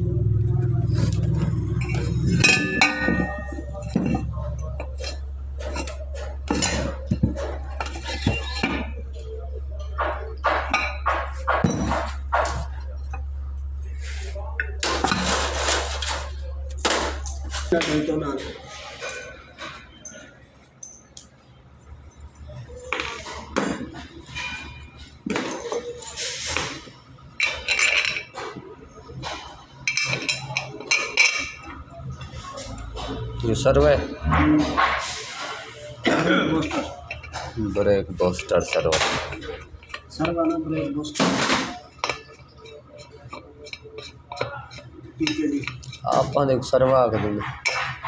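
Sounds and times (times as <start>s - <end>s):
steady low hum: 0.0s - 18.6s
metal tools clinking and scraping: 0.2s - 33.4s, 34.0s - 48.0s
metal tools clinking: 0.4s - 13.6s, 14.6s - 21.2s, 36.6s - 37.6s.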